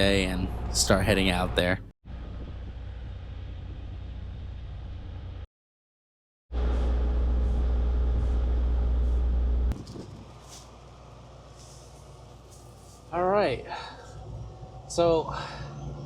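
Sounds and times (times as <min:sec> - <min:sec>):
diesel truck engine rumbling: 0:09.4 - 0:16.0.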